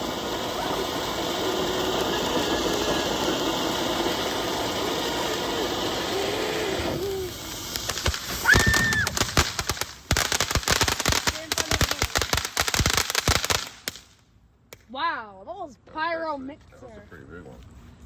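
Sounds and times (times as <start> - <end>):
firework hissing: 0.0 - 14.2
crackling pops: 6.7 - 14.9.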